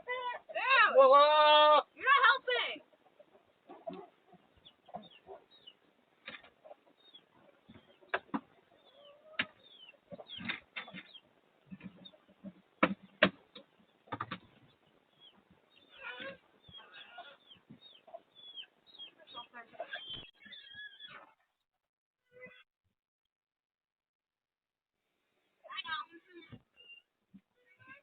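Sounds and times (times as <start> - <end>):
chickens clucking: 0.0 - 21.4
sharp knocks: 11.8 - 14.4.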